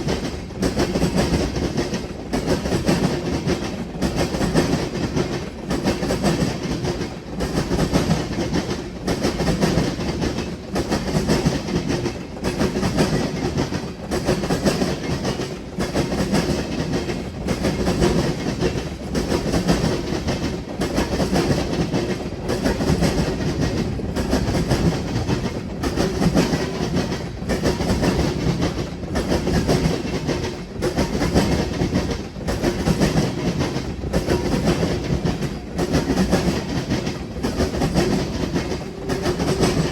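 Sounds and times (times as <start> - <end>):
train wheels clattering: 0.0 - 39.9.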